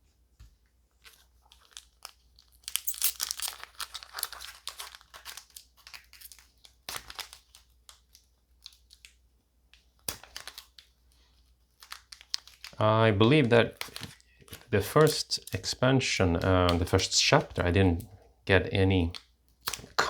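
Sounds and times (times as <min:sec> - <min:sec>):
foil wrapper tearing: 0:01.0 - 0:09.2, 0:10.0 - 0:12.8, 0:13.6 - 0:15.7
wrapper crinkling: 0:01.0 - 0:09.2, 0:09.8 - 0:18.1.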